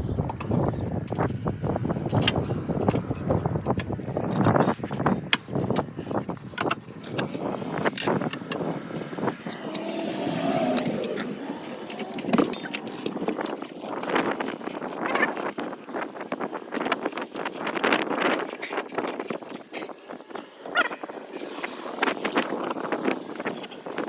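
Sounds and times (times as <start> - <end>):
metal tools clanking on tire rim: 9.6 - 13.7.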